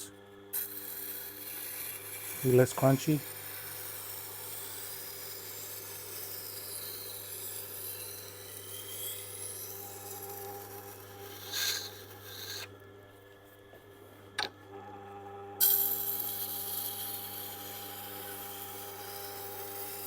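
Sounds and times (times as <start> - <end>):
grinder motor humming: 1.1 - 20.0
knife scraping grindstone: 3.4 - 12.7.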